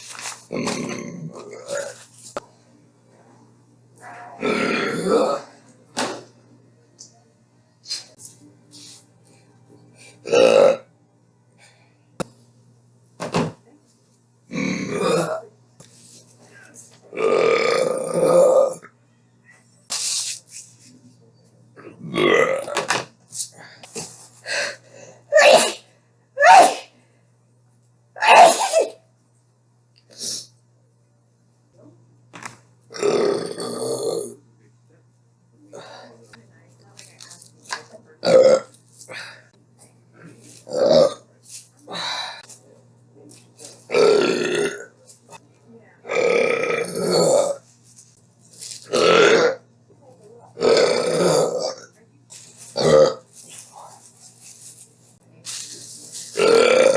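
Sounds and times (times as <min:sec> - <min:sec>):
woman belching loudly: 0:04.4 - 0:05.6, 0:10.2 - 0:10.9, 0:14.5 - 0:15.5, 0:17.1 - 0:18.9, 0:22.0 - 0:22.9, 0:32.9 - 0:34.4, 0:38.2 - 0:38.8, 0:40.6 - 0:41.3, 0:43.9 - 0:44.9, 0:46.0 - 0:47.6, 0:48.9 - 0:49.7, 0:50.6 - 0:51.9, 0:52.8 - 0:53.2, 0:56.3 - 0:56.9
person sneezing: 0:24.5 - 0:27.0, 0:28.2 - 0:29.0.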